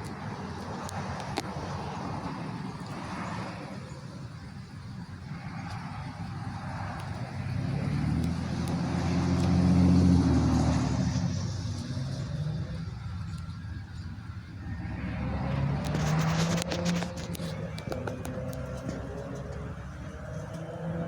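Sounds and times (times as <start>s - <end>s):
vehicle driving past: 5.4s - 21.0s.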